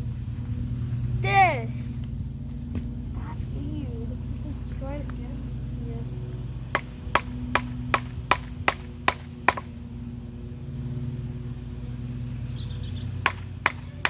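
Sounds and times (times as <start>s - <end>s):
steady low hum: 0.0s - 14.0s
sharp wooden knocks: 6.7s - 9.7s, 13.2s - 13.9s.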